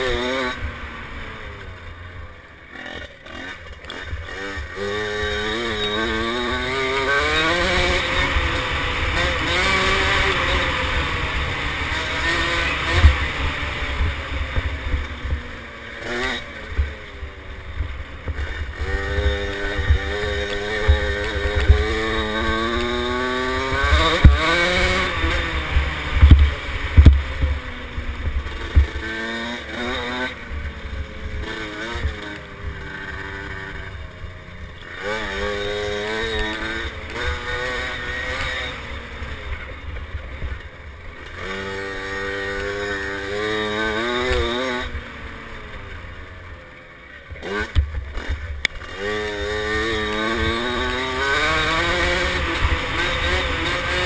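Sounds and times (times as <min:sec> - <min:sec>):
dirt bike engine revving: 0:00.0 - 0:54.0.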